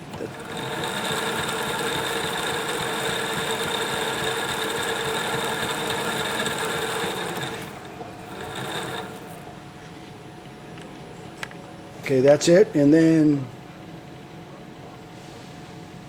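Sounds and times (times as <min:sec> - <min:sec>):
winding machine motor whine: 0:00.0 - 0:10.1.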